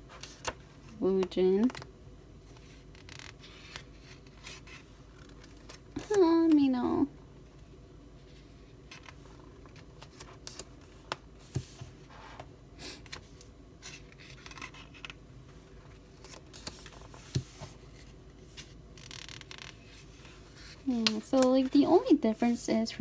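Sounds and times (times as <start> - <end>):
book pages rustling: 2.5 - 6.6, 13.1 - 23.0.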